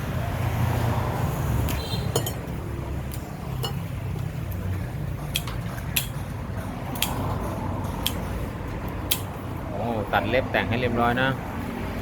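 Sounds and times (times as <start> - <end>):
spoon clinking against bowl: 2.1 - 2.5, 3.6 - 3.9.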